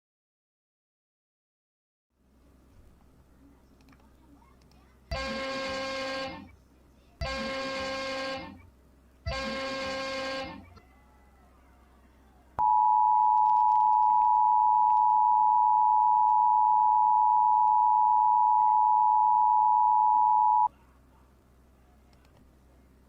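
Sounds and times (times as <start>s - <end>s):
two-tone attention signal: 12.6s - 20.7s.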